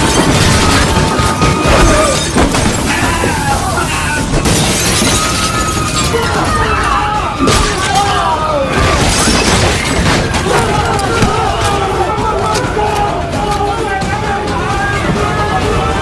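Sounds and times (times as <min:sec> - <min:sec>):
crashing impacts: 0:00.0 - 0:06.2, 0:08.7 - 0:12.1
glass shattering: 0:00.0 - 0:06.7, 0:07.4 - 0:11.7
people shouting: 0:00.0 - 0:16.0.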